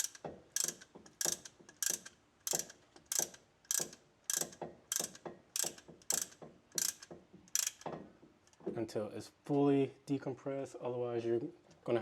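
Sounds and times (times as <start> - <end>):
ratchet tool clicking: 0.0 - 7.9.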